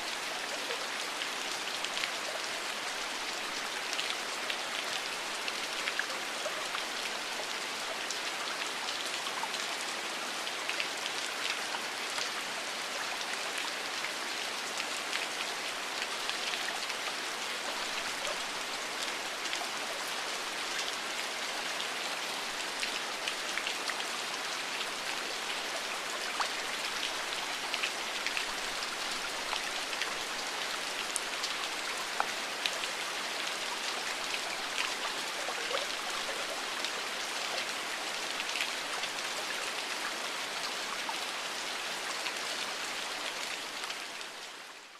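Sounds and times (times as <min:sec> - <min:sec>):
rain falling: 0:00.0 - 0:44.9.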